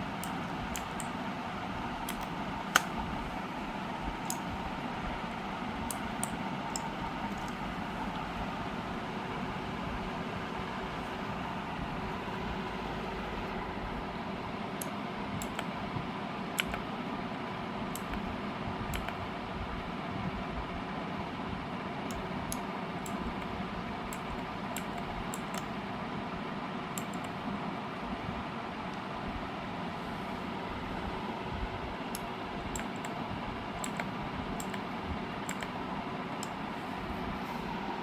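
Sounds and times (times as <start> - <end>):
background hiss and hum: 0.0 - 38.0
mechanical keyboard key clicks: 2.1 - 2.9, 16.6 - 16.9, 19.0 - 19.2.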